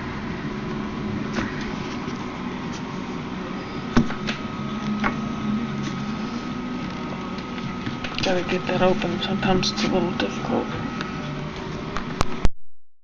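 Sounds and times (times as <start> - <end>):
steady low hum: 0.0 - 12.5.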